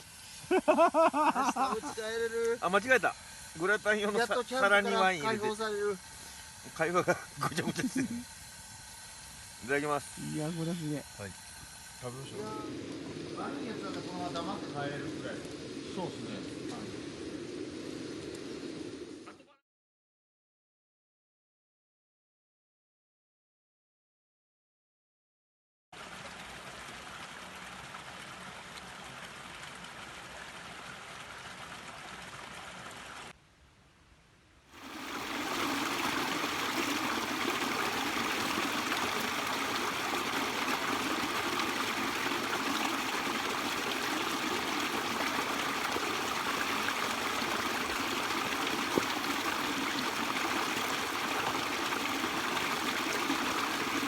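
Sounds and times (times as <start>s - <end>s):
flowing stream water: 0.0s - 19.3s, 26.0s - 33.3s, 34.8s - 54.0s.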